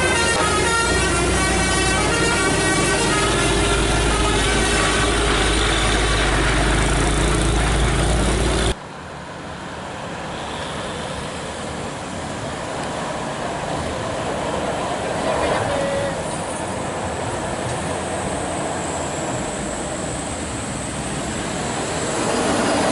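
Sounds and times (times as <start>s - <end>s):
vehicle approaching: 0.0s - 9.0s
heavy vehicle engine rumbling: 0.0s - 9.2s
traffic noise: 0.0s - 22.9s.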